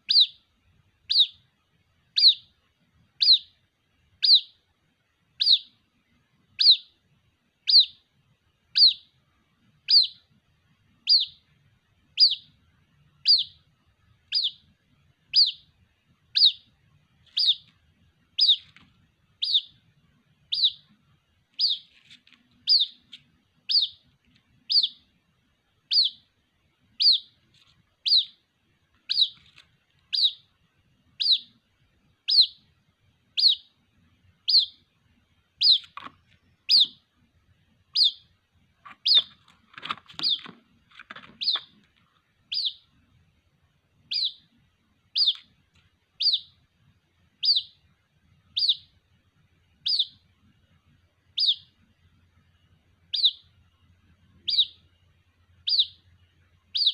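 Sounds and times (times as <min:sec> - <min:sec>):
bird chick calling: 0:00.0 - 0:01.4, 0:02.1 - 0:02.6, 0:03.2 - 0:03.6, 0:04.2 - 0:04.6, 0:05.4 - 0:05.8, 0:06.5 - 0:07.0, 0:07.6 - 0:08.0, 0:08.7 - 0:09.2, 0:09.8 - 0:10.3, 0:11.0 - 0:11.5, 0:12.1 - 0:12.6, 0:13.2 - 0:18.8, 0:19.4 - 0:19.8, 0:20.4 - 0:25.1, 0:25.8 - 0:26.3, 0:27.0 - 0:28.4, 0:29.0 - 0:30.5, 0:31.2 - 0:31.6, 0:32.2 - 0:32.7, 0:33.3 - 0:33.8, 0:34.4 - 0:34.9, 0:35.6 - 0:37.1, 0:37.9 - 0:42.9, 0:44.0 - 0:44.5, 0:45.1 - 0:45.6, 0:46.2 - 0:46.6, 0:47.4 - 0:47.8, 0:48.5 - 0:49.0, 0:49.8 - 0:50.2, 0:51.3 - 0:51.8, 0:53.1 - 0:53.5, 0:54.4 - 0:54.9, 0:55.6 - 0:56.1, 0:56.7 - 0:56.9.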